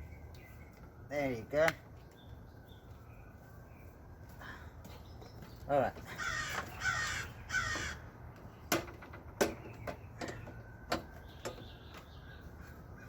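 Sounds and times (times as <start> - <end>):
crow cawing: 6.1 - 8.1
sharp clicks and knocks: 8.4 - 12.1.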